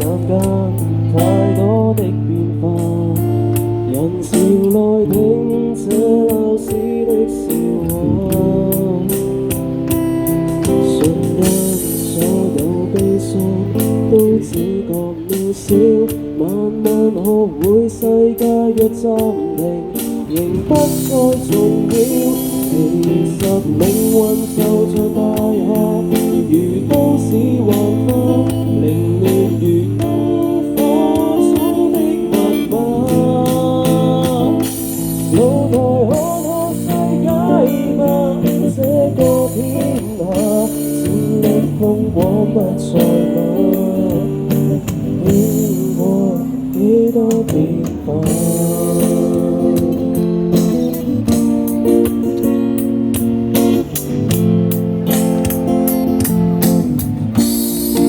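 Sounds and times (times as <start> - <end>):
strummed guitar: 0.0 - 58.0
person singing: 10.6 - 51.4.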